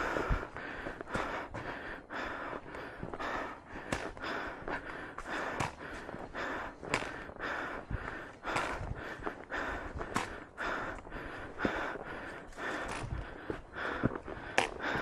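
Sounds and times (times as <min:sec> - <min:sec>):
person breathing hard: 0:00.0 - 0:15.0.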